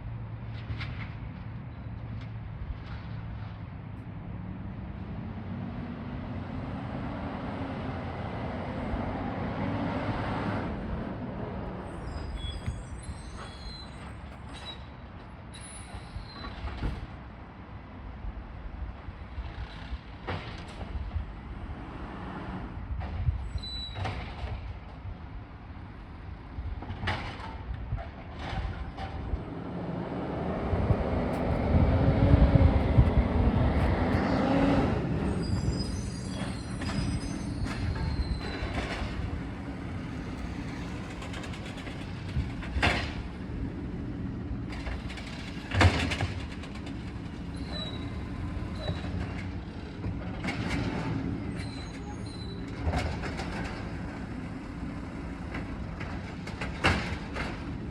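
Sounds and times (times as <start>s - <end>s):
truck engine rumble: 0.0s - 57.9s
high metallic squeals: 11.8s - 16.6s, 34.2s - 39.2s, 47.5s - 49.2s, 51.5s - 52.8s.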